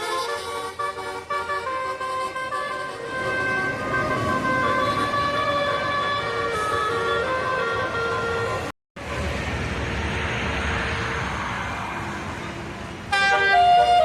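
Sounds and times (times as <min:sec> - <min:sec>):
musical air horn tune: 0:00.0 - 0:08.7, 0:13.1 - 0:14.0
bus engine: 0:00.0 - 0:14.0.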